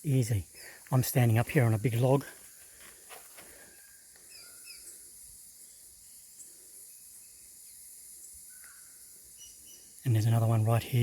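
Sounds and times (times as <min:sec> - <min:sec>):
bird chirps: 0:03.8 - 0:10.1
steady high hiss: 0:04.2 - 0:11.0.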